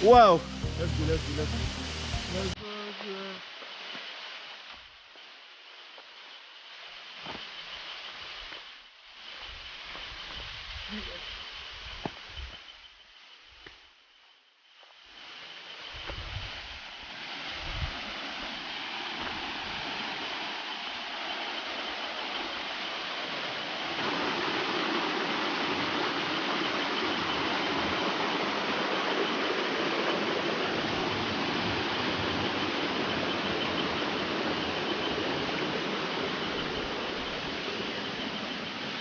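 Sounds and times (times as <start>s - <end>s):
waterfall rushing: 0.0s - 3.2s, 17.1s - 39.0s.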